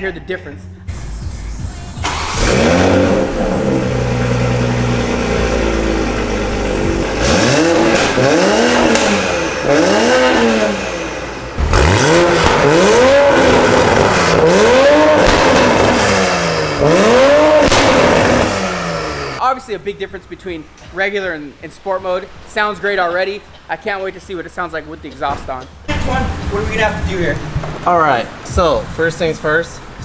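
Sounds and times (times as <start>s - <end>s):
car engine idling: 0.9s - 19.4s, 25.8s - 30.0s
engine revving in throttle blips: 2.0s - 19.4s.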